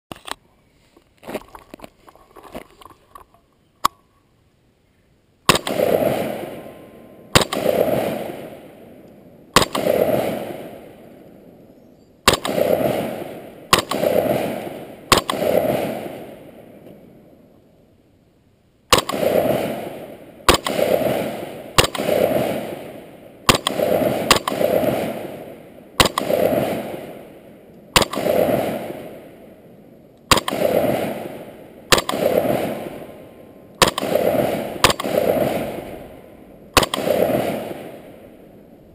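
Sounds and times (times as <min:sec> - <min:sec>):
rifle shots with echo: 0:05.5 - 0:11.6, 0:12.2 - 0:17.2, 0:18.9 - 0:38.7.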